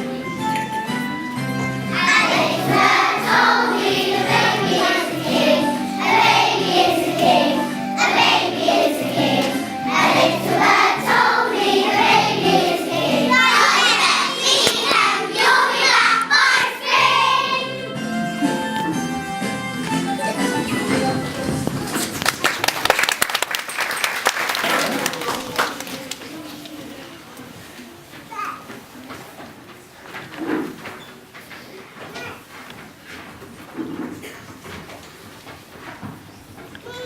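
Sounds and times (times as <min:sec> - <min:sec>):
steady held chords: 0:01.5 - 0:21.6
choir-like voices singing: 0:01.9 - 0:18.0.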